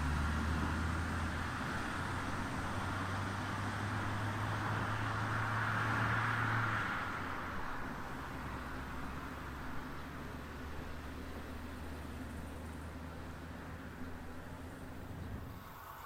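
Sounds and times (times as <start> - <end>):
engine humming: 0.0 - 16.0
rushing noise: 15.4 - 16.0.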